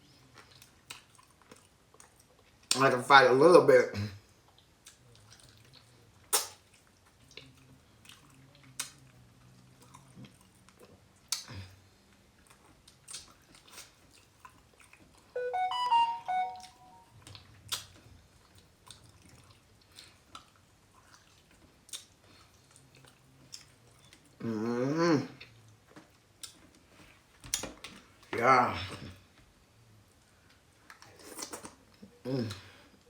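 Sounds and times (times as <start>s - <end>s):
chewing and mouth smacking: 0.4s - 2.8s, 4.4s - 11.6s, 12.3s - 15.3s, 17.2s - 24.4s
rising musical tone: 15.4s - 17.1s.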